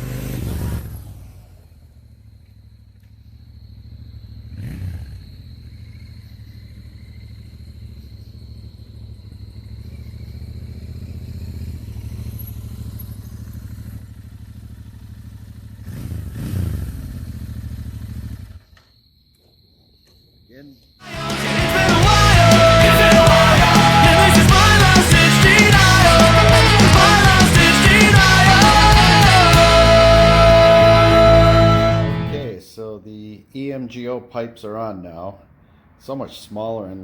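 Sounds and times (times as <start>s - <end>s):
motorcycle engine idling and revving: 0.0s - 18.9s, 21.1s - 32.4s.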